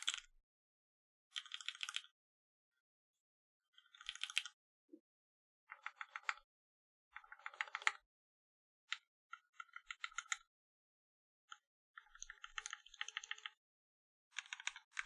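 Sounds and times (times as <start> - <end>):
typing on mechanical keyboard: 0.0 - 0.3, 1.4 - 2.1, 4.0 - 4.6, 5.7 - 6.4, 7.2 - 8.0, 12.0 - 13.6, 14.3 - 15.0.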